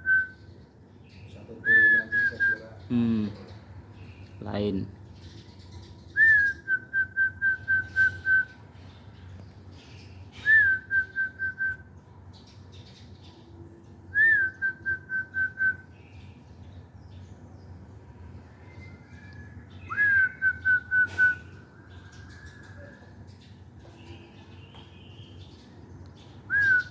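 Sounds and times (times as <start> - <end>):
person whistling a call: 19.9 - 21.4, 26.5 - 26.9.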